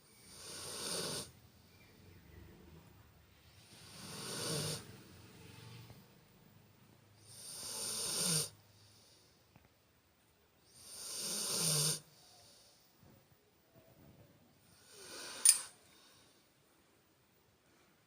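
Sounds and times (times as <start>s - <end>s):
quiet breathing: 0.0s - 2.5s, 8.4s - 9.8s, 12.0s - 13.4s, 14.6s - 16.9s, 17.5s - 18.0s
loud snoring: 0.3s - 1.4s, 3.7s - 5.0s, 7.3s - 8.6s, 10.8s - 12.1s, 14.7s - 15.6s.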